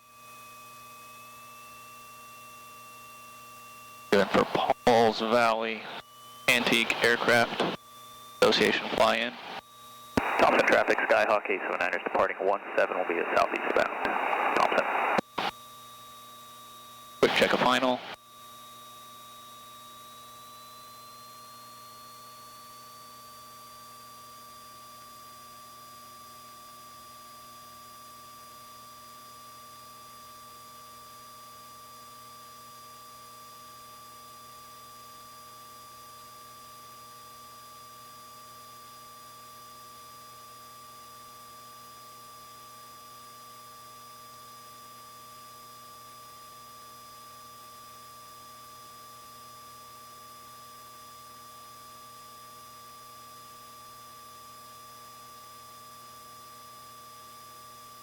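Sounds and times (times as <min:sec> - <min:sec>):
electrical hum and whine: 0:00.1 - 0:26.9.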